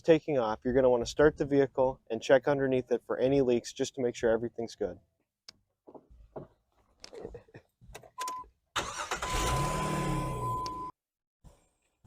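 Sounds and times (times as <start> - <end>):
car engine cranking and revving: 8.8 - 10.9.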